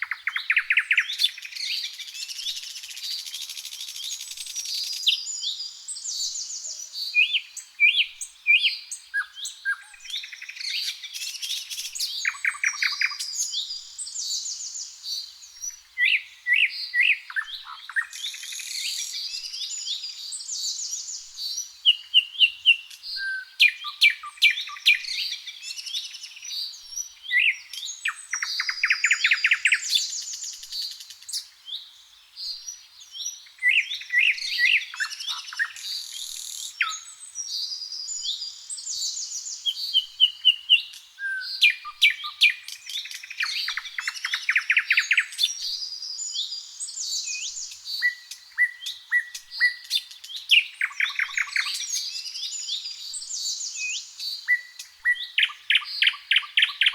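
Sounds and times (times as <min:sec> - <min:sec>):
songbirds singing: 0:00.0 - 0:56.9.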